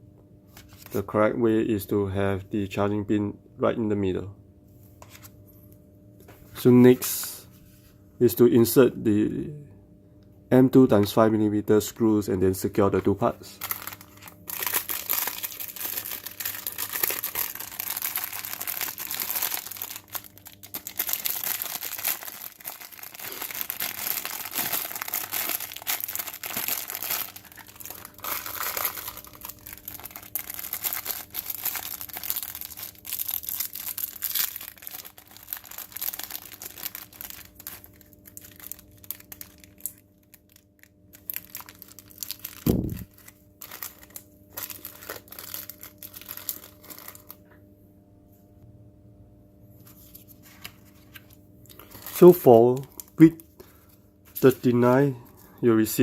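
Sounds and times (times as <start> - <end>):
plastic packaging crinkling: 13.5 - 47.5, 50.0 - 55.5.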